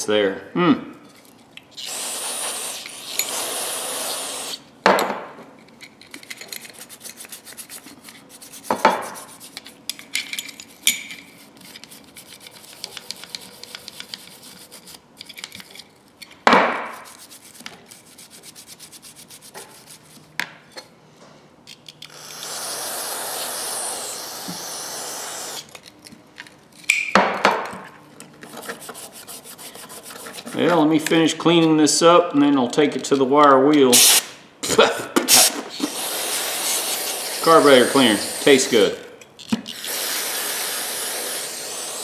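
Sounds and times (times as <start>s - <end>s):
aerosol spray can hissing: 1.8s - 4.7s, 22.1s - 25.7s, 35.3s - 38.9s, 39.8s - 42.0s
wire brush scrubbing metal: 35.9s - 38.9s.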